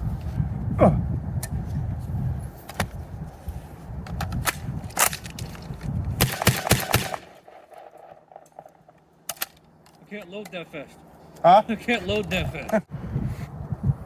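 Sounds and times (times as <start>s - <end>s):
shotgun clicks and clacks: 4.3s - 10.0s.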